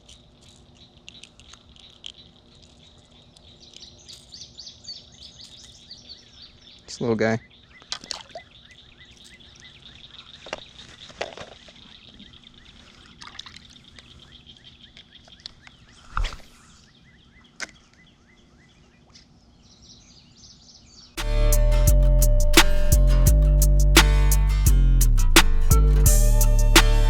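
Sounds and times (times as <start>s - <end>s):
faint bird chirps: 0.0s - 21.2s
loud guitar music: 21.2s - 27.0s.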